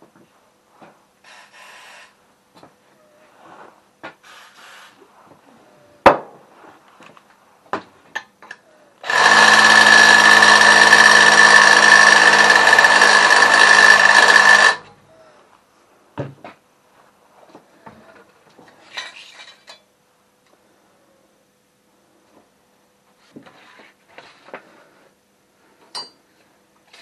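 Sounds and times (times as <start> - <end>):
electric drill cutting metal: 9.0 - 14.9.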